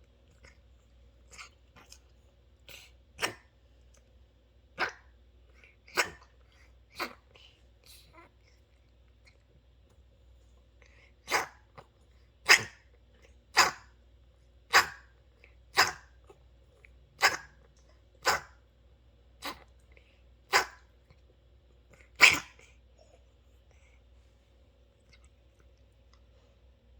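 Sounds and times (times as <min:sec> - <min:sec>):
cat coughing: 0:22.2 - 0:22.6.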